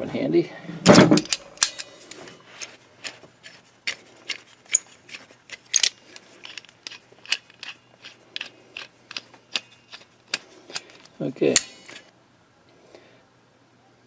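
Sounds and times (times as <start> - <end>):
locking pliers clicking: 1.2 - 1.9, 3.9 - 12.1.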